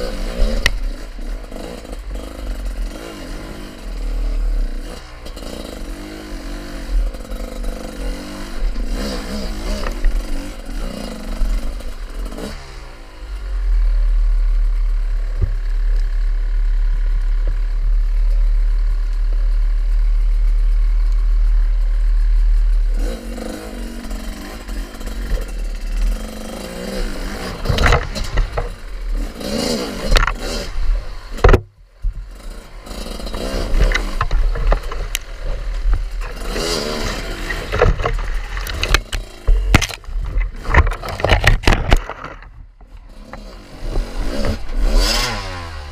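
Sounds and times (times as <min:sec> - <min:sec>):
motorcycle engine revving: 0:00.0 - 0:45.9
steady low rumble: 0:13.2 - 0:45.0.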